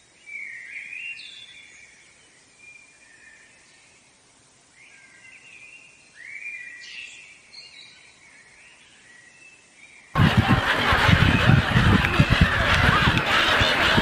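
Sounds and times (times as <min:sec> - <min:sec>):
faint outdoor background noise: 0:00.0 - 0:14.0
gulls calling: 0:10.2 - 0:14.0.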